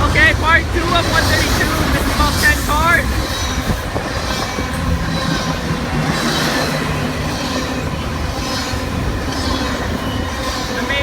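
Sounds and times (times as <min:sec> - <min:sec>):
freight train cars rumbling past: 0:00.0 - 0:11.0.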